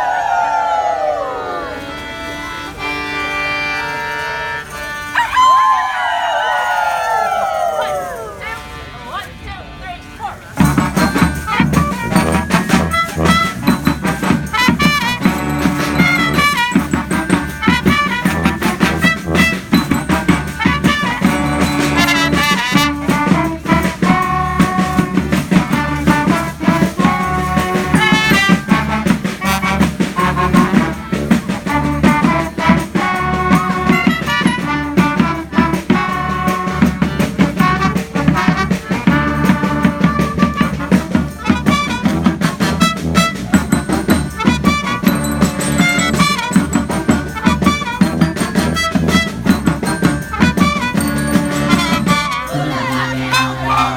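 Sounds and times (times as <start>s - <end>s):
brass horns playing: 0.0s - 5.8s, 10.0s - 53.9s
steady drum beat: 10.6s - 53.0s.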